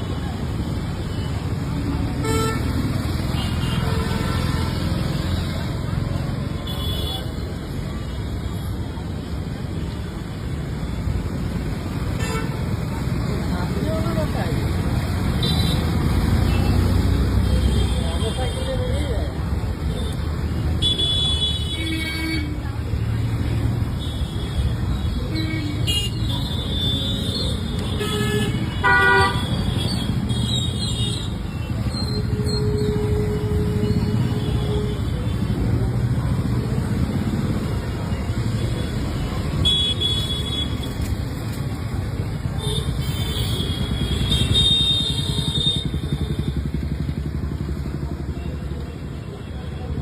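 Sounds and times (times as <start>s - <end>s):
motorcycle engine running: 43.7s - 48.6s.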